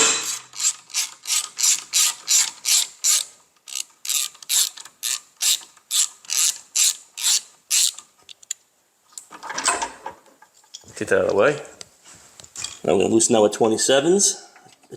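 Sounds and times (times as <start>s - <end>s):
hand ratchet clicking: 0.0s - 8.0s.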